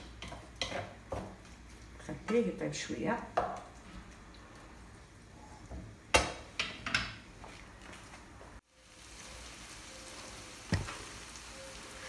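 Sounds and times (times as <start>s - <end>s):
spoon knocking and scraping pan: 0.0s - 1.4s
mussels frying in oil: 8.7s - 12.0s.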